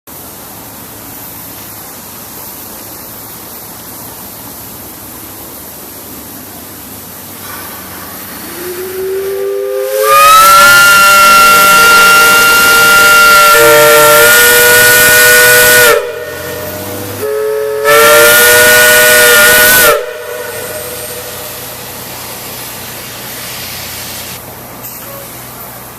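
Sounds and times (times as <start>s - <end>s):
steam hissing: 0.1s - 25.9s
steam whistle blowing: 8.2s - 22.4s.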